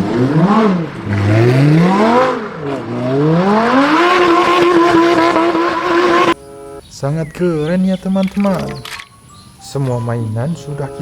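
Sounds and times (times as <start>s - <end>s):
sports car engine revving: 0.0s - 6.4s.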